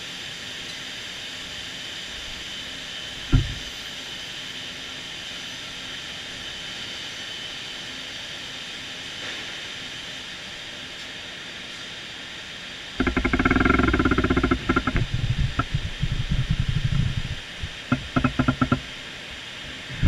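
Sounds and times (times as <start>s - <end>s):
machine hiss with high whine: 0.0s - 20.0s
short low thump: 3.3s - 3.7s.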